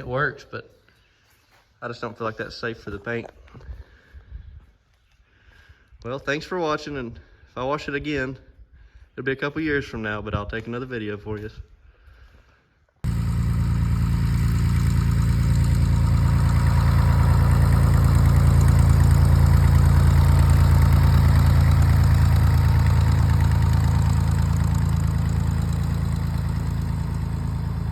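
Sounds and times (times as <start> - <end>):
propeller plane engine running: 13.0 - 27.9.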